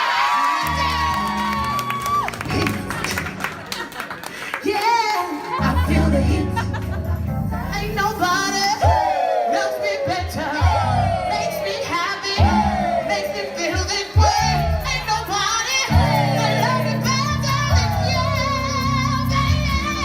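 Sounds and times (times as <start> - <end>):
gospel choir singing: 5.5 - 20.0.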